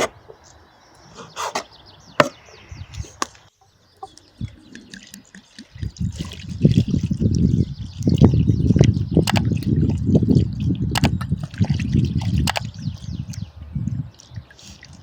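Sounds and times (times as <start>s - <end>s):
hens clucking: 1.1s - 2.5s
running liquid splashing: 4.4s - 12.4s.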